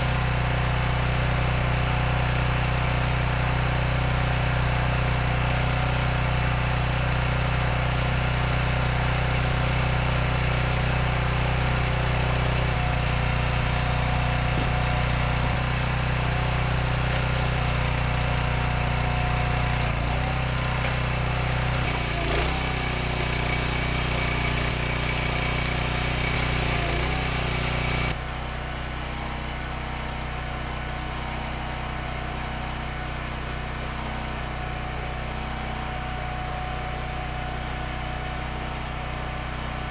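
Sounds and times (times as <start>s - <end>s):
log splitter engine running: 0.0s - 39.9s
knocks and creaks of splitting logs: 9.0s - 28.2s.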